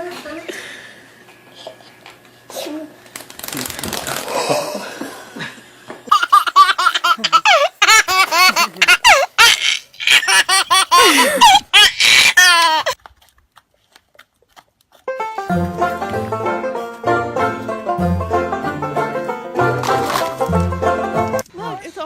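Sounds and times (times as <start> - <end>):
small child laughing: 6.1 - 13.0
banjo music: 15.1 - 21.4.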